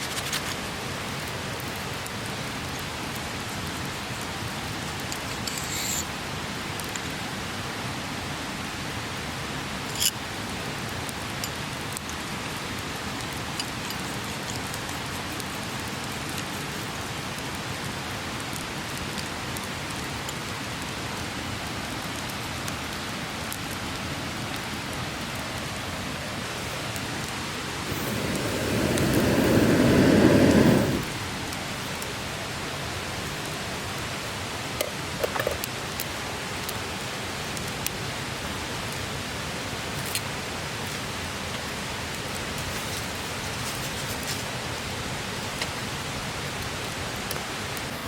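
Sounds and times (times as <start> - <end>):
mountain stream rushing: 24.1 - 37.5
low rumbling sound: 27.7 - 31.4.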